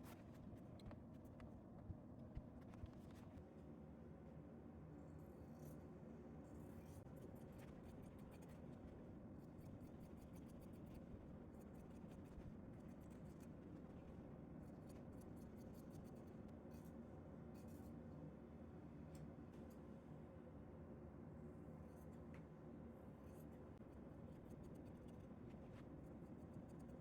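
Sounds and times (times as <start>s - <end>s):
faint scratching on fabric: 0.0s - 1.4s, 2.4s - 3.5s, 5.2s - 18.1s, 23.1s - 27.0s.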